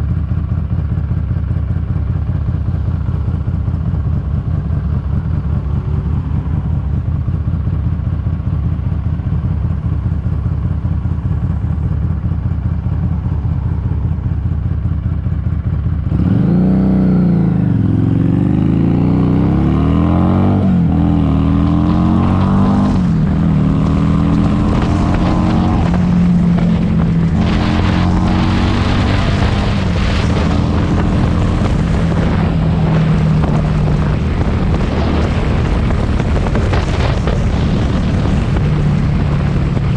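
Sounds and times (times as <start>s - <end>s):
motorcycle engine revving: 0.0s - 39.9s
wind rushing on microphone: 19.9s - 39.9s.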